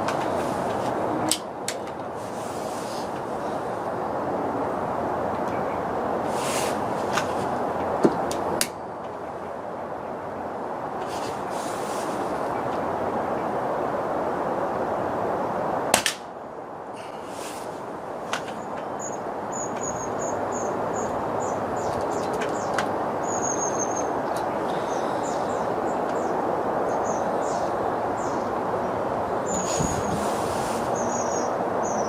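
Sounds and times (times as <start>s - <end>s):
outdoor hiss: 0.0s - 5.3s, 5.9s - 9.8s, 10.4s - 22.2s, 22.8s - 32.0s
small birds chirping: 18.5s - 32.0s.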